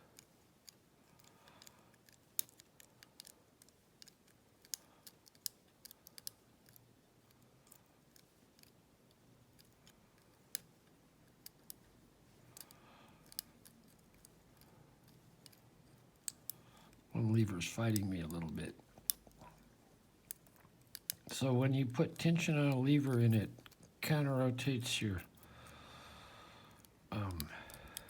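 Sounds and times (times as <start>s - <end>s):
lock picking clicks: 0.2s - 8.8s, 12.5s - 17.1s, 17.9s - 19.4s, 20.2s - 21.4s.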